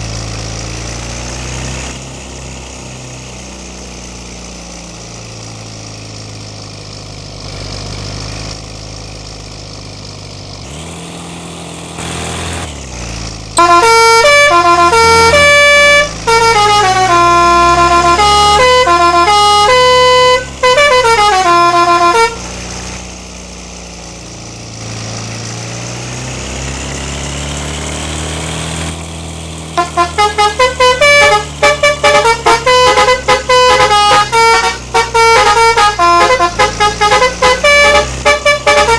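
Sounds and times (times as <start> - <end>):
engine hum: 0.0 - 38.9
bus air horn melody: 13.6 - 22.6, 29.8 - 38.9.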